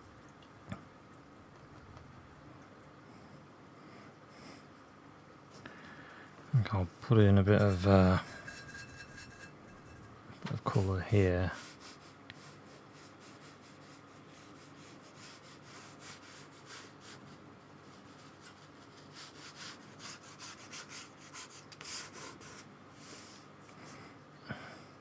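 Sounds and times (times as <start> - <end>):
paintbrush strokes on paper: 7.5 - 10.0, 10.7 - 23.4.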